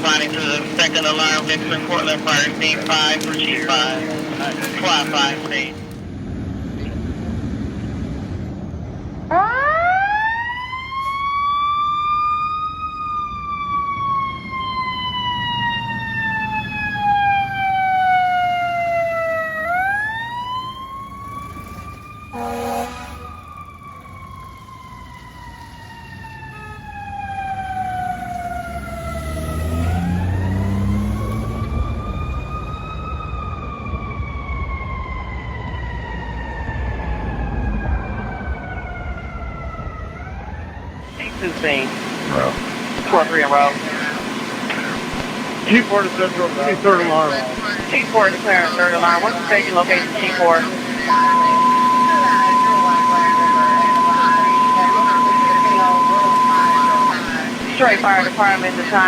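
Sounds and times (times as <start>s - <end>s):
truck engine rumbling: 0.0s - 12.6s, 17.0s - 59.0s
fire truck siren: 0.0s - 59.0s
short horn blast: 22.3s - 23.6s.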